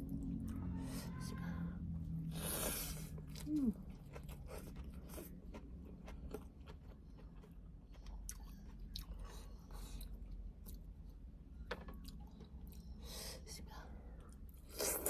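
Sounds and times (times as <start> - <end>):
person chewing crunchy food: 2.2 - 11.2.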